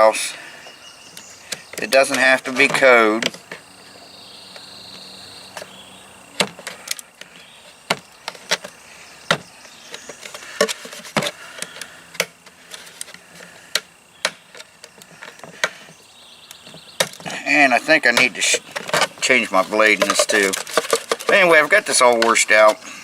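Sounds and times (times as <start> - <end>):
light scraping: 17.2 - 22.9.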